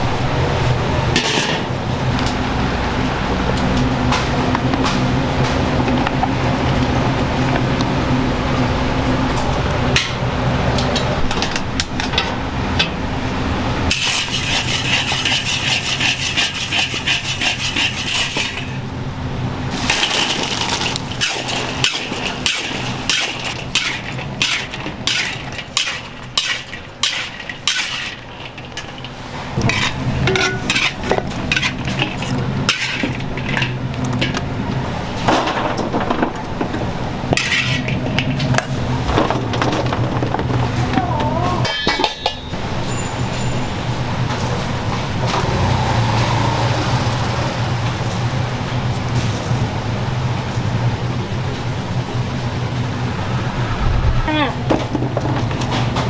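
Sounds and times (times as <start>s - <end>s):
metal utensils and pans clattering: 1.1s - 2.4s, 13.9s - 18.8s, 19.7s - 34.5s, 35.1s - 45.6s
steady low hum: 49.8s - 55.4s.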